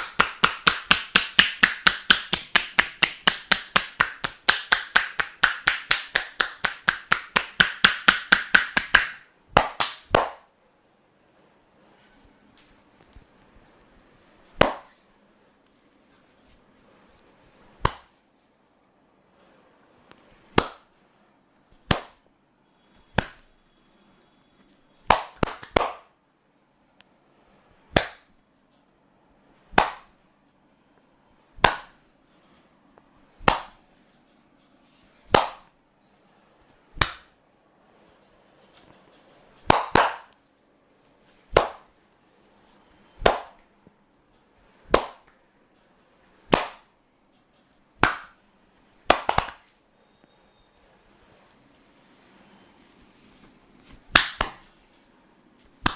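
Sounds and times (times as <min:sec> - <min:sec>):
sharp hand slaps: 0:00.0 - 0:10.5, 0:14.6 - 0:15.0, 0:17.8 - 0:18.2, 0:20.5 - 0:20.9, 0:21.9 - 0:22.2, 0:23.2 - 0:23.5, 0:25.1 - 0:26.1, 0:27.9 - 0:28.3, 0:29.7 - 0:30.2, 0:31.6 - 0:32.0, 0:33.4 - 0:33.8, 0:35.3 - 0:35.7, 0:37.0 - 0:37.4, 0:39.7 - 0:40.4, 0:41.5 - 0:41.9, 0:43.2 - 0:43.6, 0:44.9 - 0:45.4, 0:46.5 - 0:46.9, 0:48.0 - 0:48.4, 0:49.1 - 0:49.8, 0:54.1 - 0:54.7.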